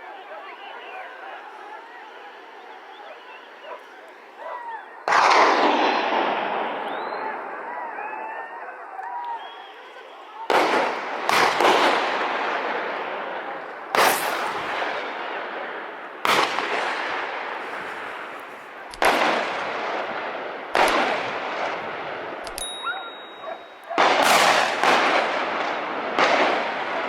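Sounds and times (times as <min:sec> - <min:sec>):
gunshots with echoing tail: 0:05.0 - 0:08.6, 0:10.4 - 0:27.0.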